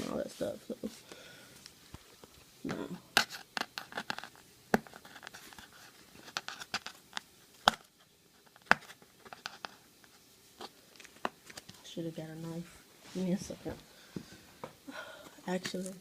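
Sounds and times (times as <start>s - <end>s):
crinkles: 1.6s - 12.0s.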